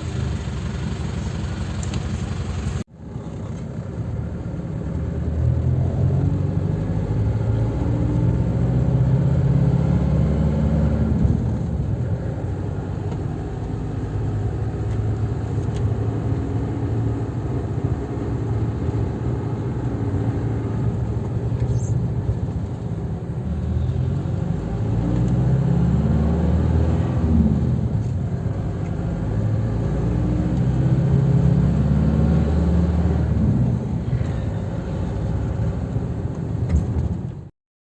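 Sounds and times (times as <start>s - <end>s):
diesel engine running: 0.0s - 4.0s.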